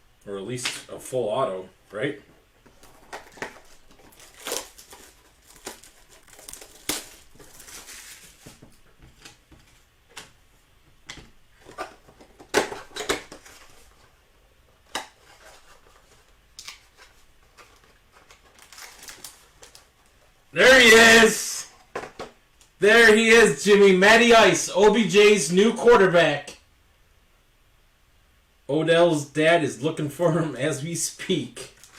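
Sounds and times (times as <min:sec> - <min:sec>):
plastic wrapper crinkling and tearing: 0:02.7 - 0:08.6, 0:15.2 - 0:20.2, 0:31.7 - 0:31.9.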